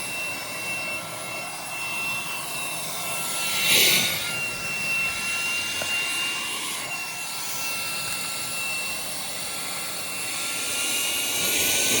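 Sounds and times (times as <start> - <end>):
handheld vacuum motor whining: 0.0 - 12.0.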